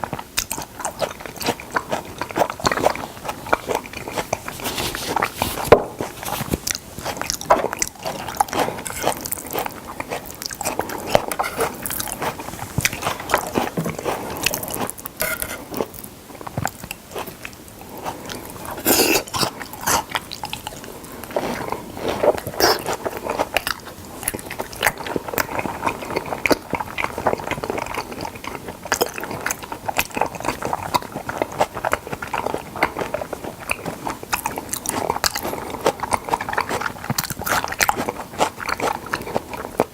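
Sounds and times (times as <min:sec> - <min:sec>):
chewing and biting: 0:00.0 - 0:39.9.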